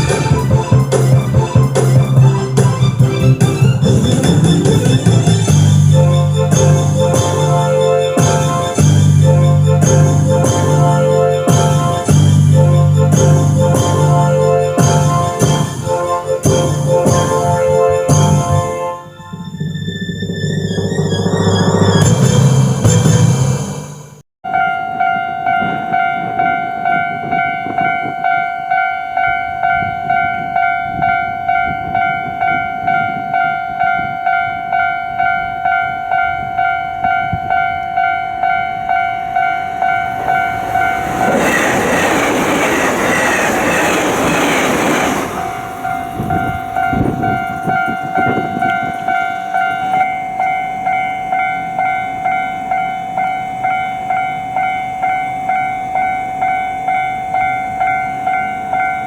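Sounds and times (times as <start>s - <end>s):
train passing with loud rush: 0.0s - 59.0s
level crossing warning bell: 4.0s - 19.6s, 24.4s - 59.0s
wheels clattering over rail joints: 39.3s - 50.1s.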